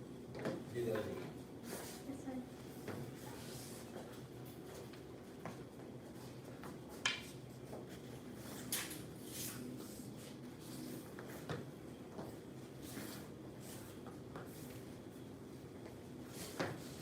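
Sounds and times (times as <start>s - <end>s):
low room hum: 0.0s - 17.0s.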